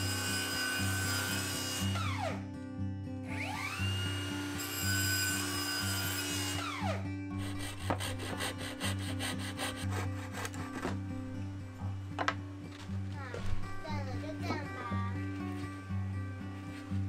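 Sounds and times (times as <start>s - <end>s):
saw cutting wood: 0.0s - 2.4s, 3.3s - 11.2s
quiet acoustic music: 0.0s - 17.0s.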